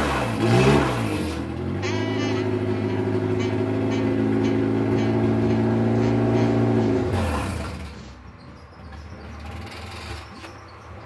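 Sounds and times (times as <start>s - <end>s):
car engine revving: 0.0s - 8.2s.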